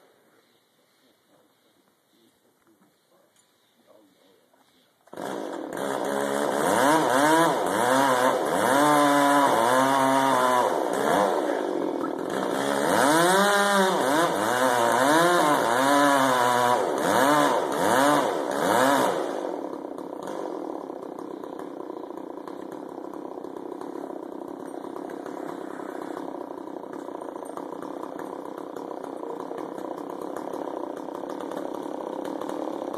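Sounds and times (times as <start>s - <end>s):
chainsaw revving and idling: 5.1s - 32.9s.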